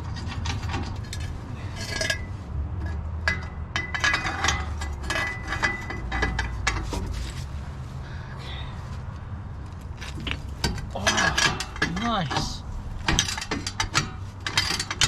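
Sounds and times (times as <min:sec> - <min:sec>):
hand tools clinking on metal: 0:10.6 - 0:15.0.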